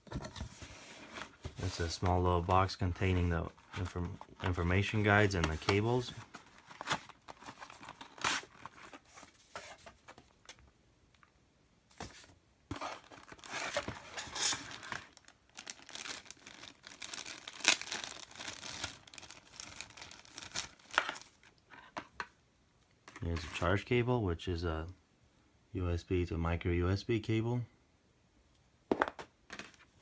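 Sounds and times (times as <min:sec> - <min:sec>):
paper and plastic rustling: 0:00.0 - 0:10.4, 0:11.9 - 0:22.1
packaging tearing: 0:12.8 - 0:21.4.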